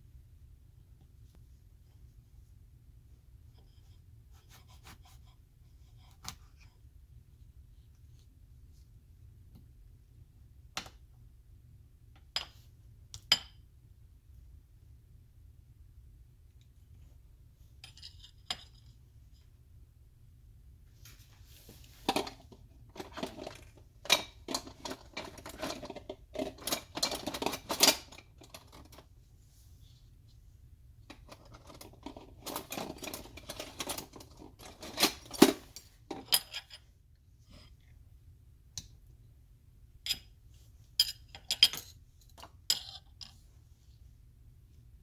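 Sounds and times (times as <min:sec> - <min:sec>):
objects clattering on hard surface: 0:22.0 - 0:29.0.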